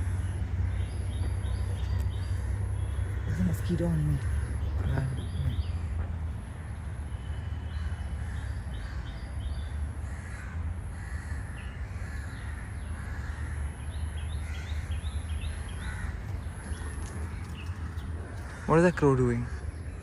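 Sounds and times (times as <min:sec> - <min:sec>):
birds calling high notes: 0:00.0 - 0:05.8
crows cawing: 0:01.6 - 0:05.5, 0:10.0 - 0:19.8.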